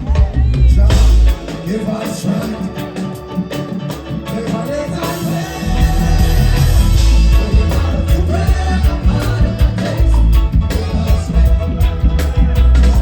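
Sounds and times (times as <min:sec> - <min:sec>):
heavy bass: 0:00.0 - 0:02.0, 0:05.0 - 0:13.0
live reggae band playing: 0:00.0 - 0:13.0
person singing: 0:00.0 - 0:13.0.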